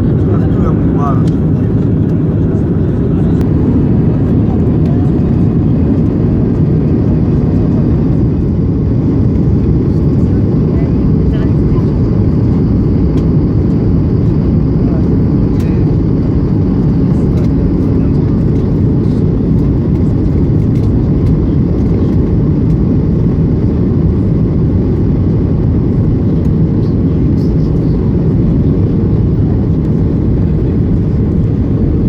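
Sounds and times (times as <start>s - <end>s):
aircraft engine rumble: 0.0s - 32.0s.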